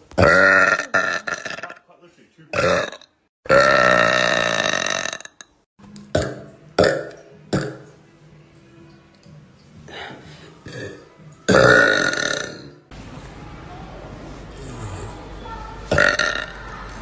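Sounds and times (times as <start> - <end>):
woman burping: 0.2 - 1.8, 2.6 - 5.5, 6.1 - 7.9, 10.6 - 12.8, 15.9 - 16.5.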